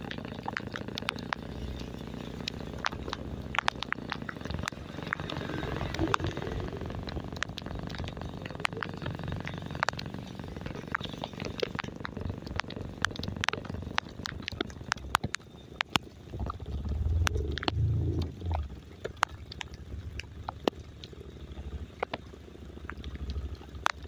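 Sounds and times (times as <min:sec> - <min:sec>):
raindrops clicking: 0:00.0 - 0:24.0
low rumble: 0:16.2 - 0:21.9.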